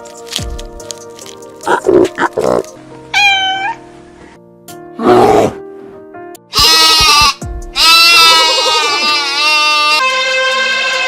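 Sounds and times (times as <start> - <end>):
background music: 0.0 - 11.0
farm animal bleating: 6.5 - 11.0.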